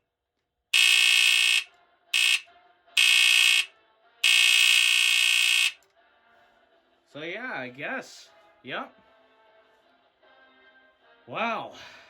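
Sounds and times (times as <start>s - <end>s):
smoke alarm horn blasts: 0.8s - 2.4s, 3.0s - 5.8s.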